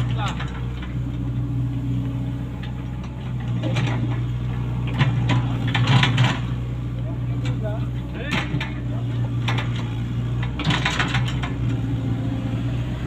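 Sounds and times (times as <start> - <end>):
metallic clanks and rattles: 0.0 - 1.2, 2.6 - 6.6, 7.3 - 11.8
excavator diesel engine running: 0.0 - 13.0.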